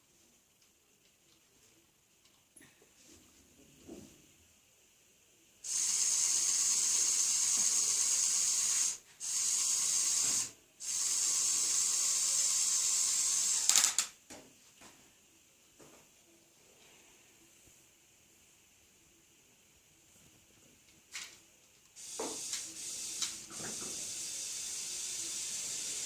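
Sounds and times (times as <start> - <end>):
toy motor and gears whirring: 5.6 - 14.1, 22.0 - 26.0.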